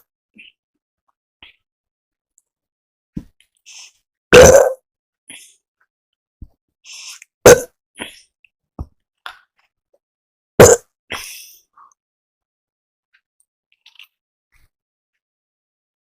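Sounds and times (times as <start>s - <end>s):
person burping: 4.3s - 4.8s, 7.5s - 7.7s, 10.6s - 10.9s
breathing: 6.8s - 7.3s, 11.2s - 11.9s
mouth clicks: 10.6s - 10.8s.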